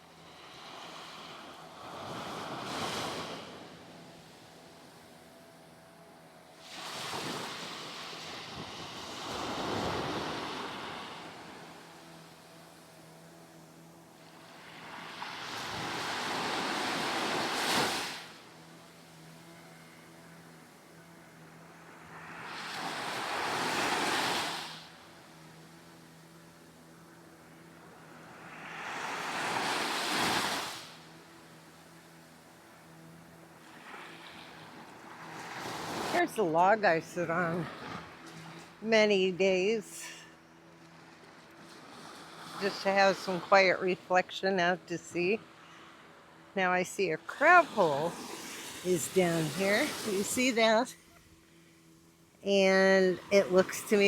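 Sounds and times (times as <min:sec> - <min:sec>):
wave breaking on beach: 0:06.7 - 0:11.8, 0:14.4 - 0:18.4, 0:22.1 - 0:24.9, 0:28.1 - 0:31.0, 0:47.4 - 0:50.9.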